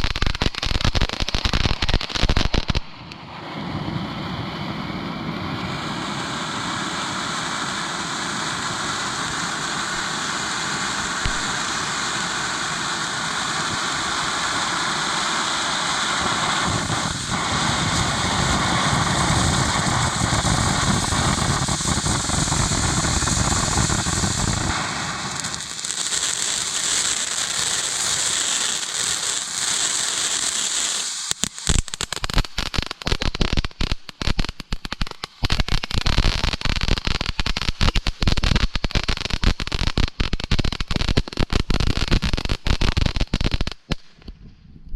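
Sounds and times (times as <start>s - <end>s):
firework fountain hissing: 0.0s - 44.1s
firework sharp crackles: 0.0s - 44.5s.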